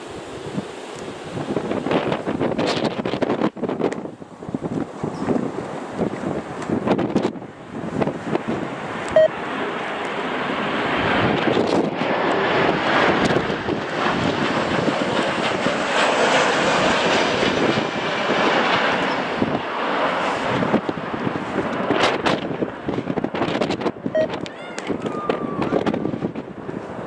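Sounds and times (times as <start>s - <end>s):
jet engines roaring: 0.0s - 27.0s.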